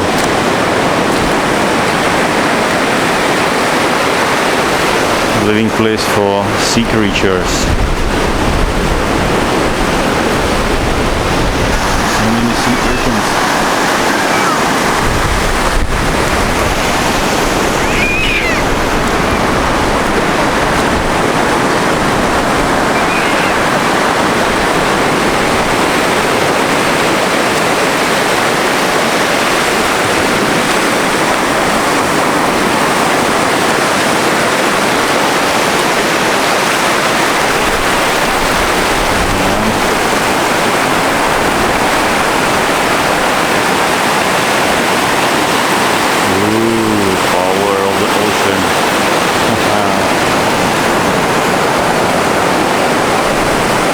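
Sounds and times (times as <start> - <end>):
sea surf on stony beach: 0.0 - 53.9.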